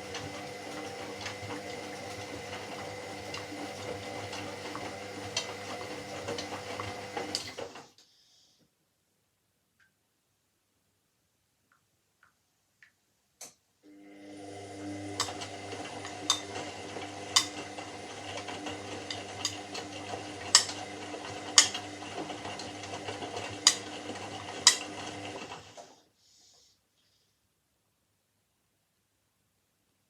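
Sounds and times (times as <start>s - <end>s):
washing machine motor hum: 0.0s - 7.9s, 13.8s - 25.9s.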